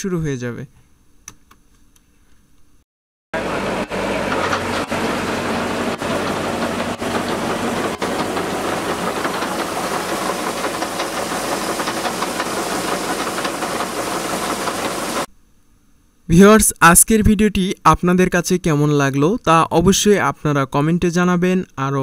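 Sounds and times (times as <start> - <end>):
combine harvester running: 3.4 - 15.3.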